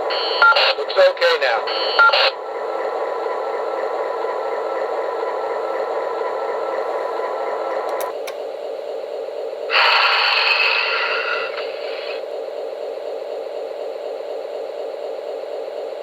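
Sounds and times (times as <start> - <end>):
faint hum: 0.0 - 16.0
radio static hiss: 0.1 - 2.4, 9.7 - 12.2
clicks: 7.8 - 8.4.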